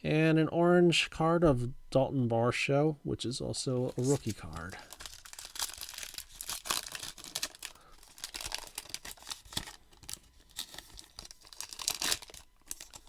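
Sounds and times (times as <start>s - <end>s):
plastic wrapper crinkling and tearing: 3.9s - 13.0s.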